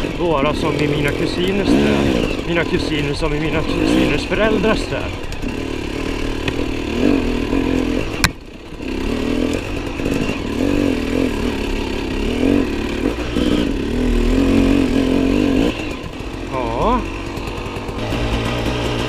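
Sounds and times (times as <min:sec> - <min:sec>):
motorcycle engine revving: 0:00.0 - 0:19.0.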